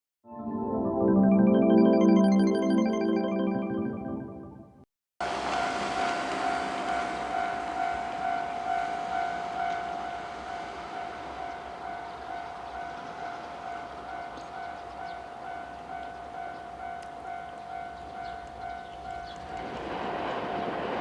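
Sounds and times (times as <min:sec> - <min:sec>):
level-crossing warning bell ringing: 0:05.4 - 0:20.7.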